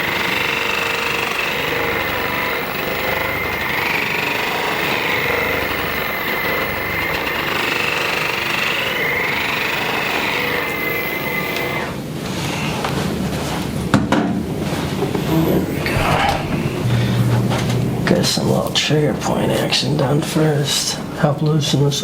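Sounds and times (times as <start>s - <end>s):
massage gun buzzing: 0.0s - 12.0s.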